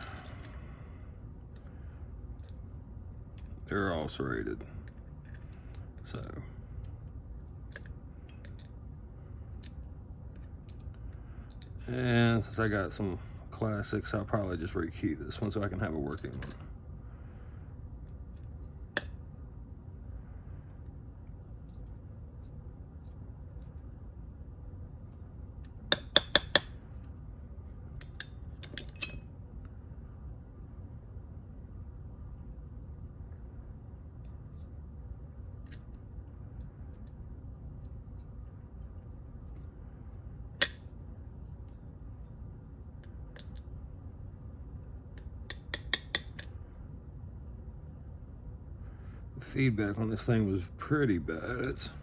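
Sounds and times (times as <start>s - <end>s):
metal padlock parts clinking: 0.0s - 0.8s, 16.1s - 16.6s, 27.9s - 29.4s
low steady hum: 0.0s - 52.0s.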